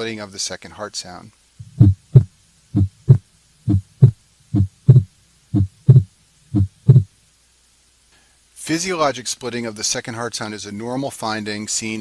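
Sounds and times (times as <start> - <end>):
heartbeat through stethoscope: 1.6 - 7.1.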